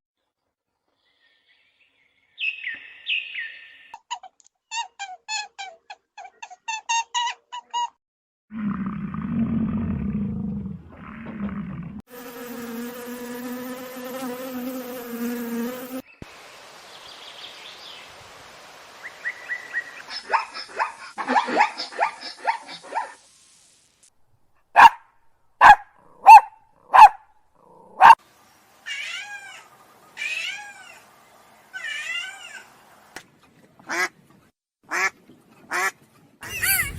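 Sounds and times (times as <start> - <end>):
low rough animal growl: 8.5 - 12.0.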